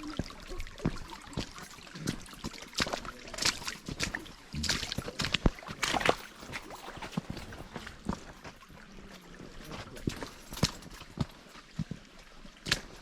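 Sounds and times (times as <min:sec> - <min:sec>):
footsteps crunching on icy trail: 0:00.2 - 0:13.0.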